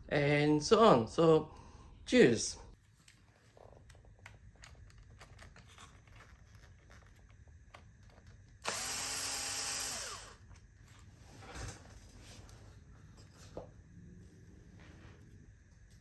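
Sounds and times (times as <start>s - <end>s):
cordless drill running: 8.6s - 10.4s.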